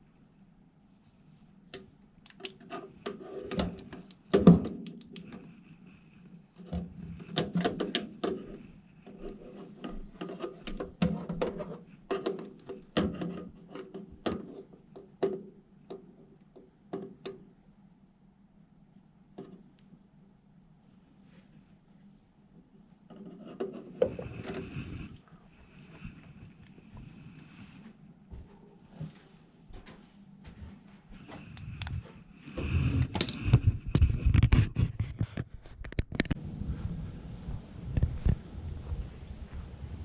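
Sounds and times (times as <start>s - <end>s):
steady low hum: 36.3s - 40.0s.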